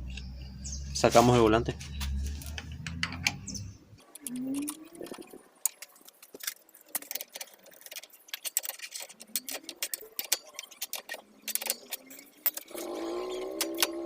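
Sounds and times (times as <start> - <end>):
metallic clicks of hand tools: 4.0 - 14.0.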